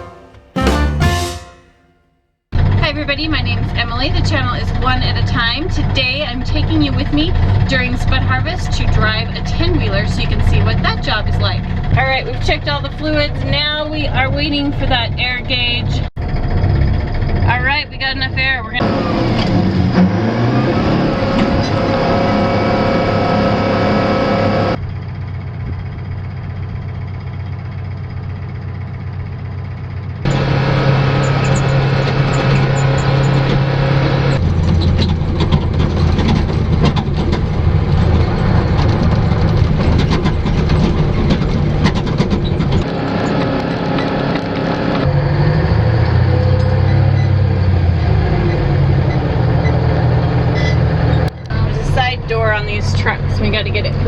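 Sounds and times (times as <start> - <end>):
diesel truck engine running: 2.6 - 54.0.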